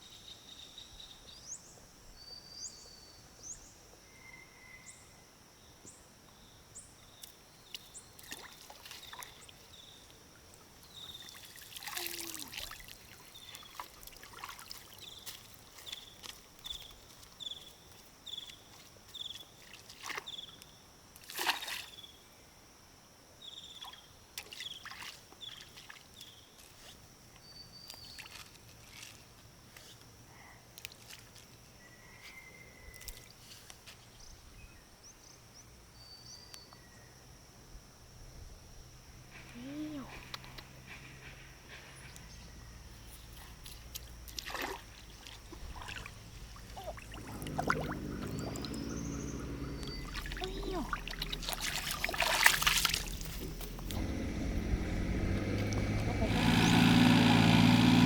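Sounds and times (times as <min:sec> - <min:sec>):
water sloshing and dripping: 0:07.7 - 0:09.7, 0:10.5 - 0:17.4, 0:19.6 - 0:20.4, 0:21.2 - 0:22.0, 0:23.8 - 0:26.2, 0:43.6 - 0:54.1.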